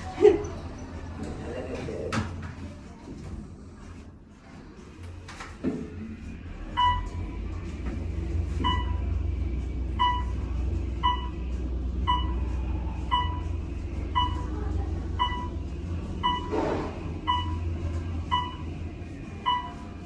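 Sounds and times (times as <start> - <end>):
elevator car rumbling: 0.0 - 4.1, 4.8 - 20.0
short electronic beeps: 8.6 - 9.1, 10.0 - 10.4, 11.0 - 11.4, 12.1 - 12.4, 13.1 - 14.5, 15.2 - 15.6, 16.2 - 16.6, 17.2 - 17.7, 18.3 - 18.7, 19.4 - 19.9.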